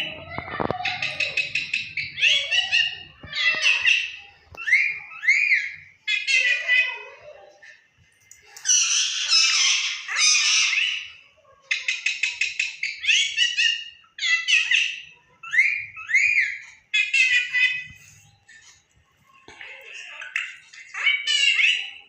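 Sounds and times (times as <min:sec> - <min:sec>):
parrot squawking: 0:00.0 - 0:07.1, 0:08.5 - 0:18.8, 0:20.0 - 0:22.0
parrot clicking chatter: 0:00.4 - 0:05.5.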